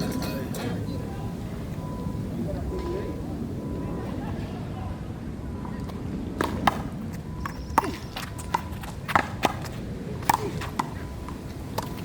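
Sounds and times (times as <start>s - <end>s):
ball struck and bouncing: 6.4s - 11.0s.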